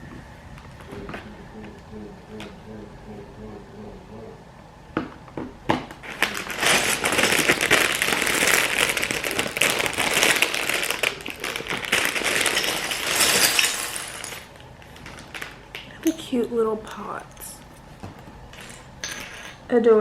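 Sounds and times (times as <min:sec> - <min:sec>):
plastic bags crinkling: 0:06.0 - 0:19.7.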